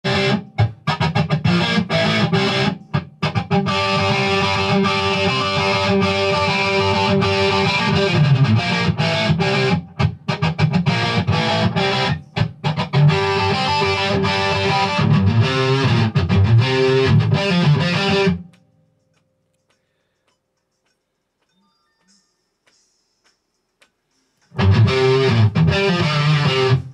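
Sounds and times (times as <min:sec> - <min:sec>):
distorted electric guitar lead: 0:00.0 - 0:18.5, 0:24.5 - 0:26.9.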